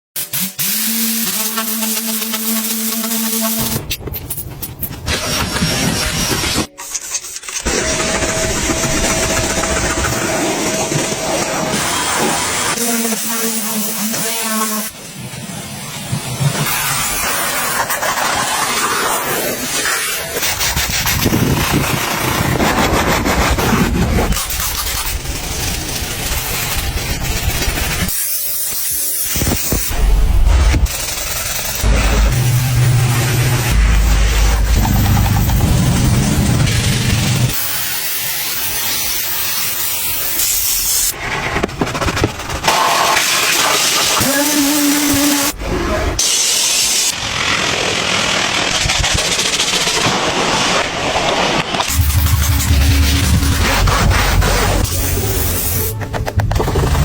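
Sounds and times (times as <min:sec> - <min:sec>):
pressure washer spraying water: 0:00.2 - 0:21.1, 0:24.3 - 0:30.1, 0:30.8 - 0:41.2, 0:42.2 - 0:45.6, 0:46.2 - 0:50.0, 0:51.8 - 0:56.0
steady hum: 0:31.7 - 0:37.5, 0:51.9 - 0:56.0.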